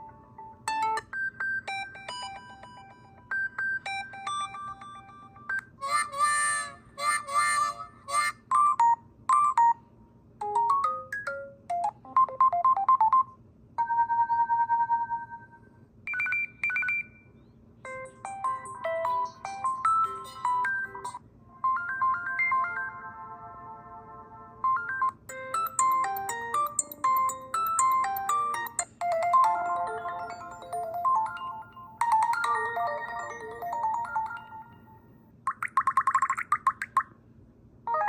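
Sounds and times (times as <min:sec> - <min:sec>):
faint low hum: 0:00.0 - 0:35.7
electronic phone ringtones: 0:00.7 - 0:05.7, 0:10.4 - 0:17.2, 0:18.1 - 0:23.2, 0:24.6 - 0:35.2.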